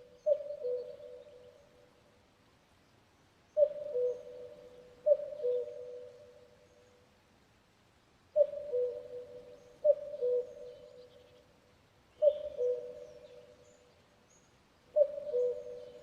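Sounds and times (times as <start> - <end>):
cuckoo calling: 0.0 - 1.4, 3.6 - 6.4, 8.4 - 11.2, 12.2 - 13.6, 15.0 - 16.0.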